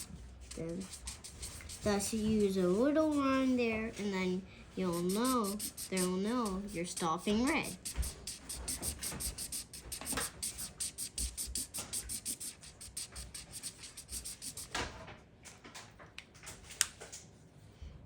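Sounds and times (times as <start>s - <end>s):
marker scribbling on paper: 0.0s - 3.5s, 4.8s - 14.8s.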